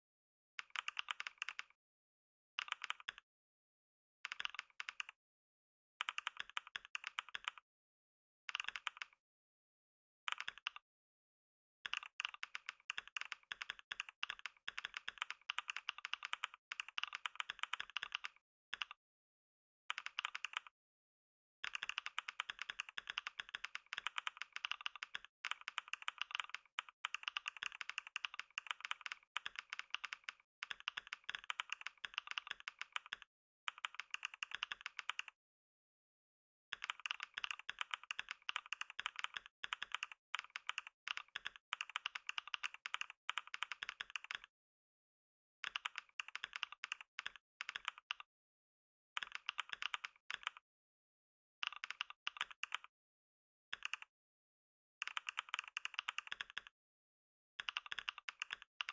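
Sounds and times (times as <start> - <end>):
rapid keyboard typing: 0.6 - 1.8, 2.6 - 3.2, 4.2 - 5.2, 6.0 - 7.6, 8.5 - 9.2, 10.3 - 10.8, 11.9 - 19.0, 19.9 - 20.7, 21.6 - 35.4, 36.7 - 44.5, 45.6 - 48.3, 49.2 - 50.6, 51.6 - 52.9, 53.7 - 54.1, 55.0 - 56.7, 57.6 - 58.9.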